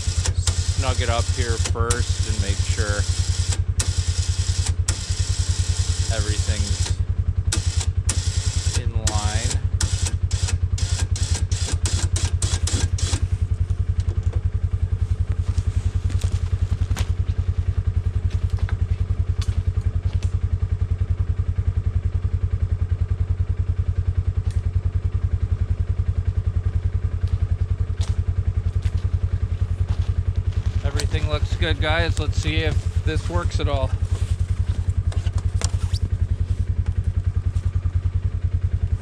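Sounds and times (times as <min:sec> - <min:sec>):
atv engine idling: 0:00.0 - 0:39.0.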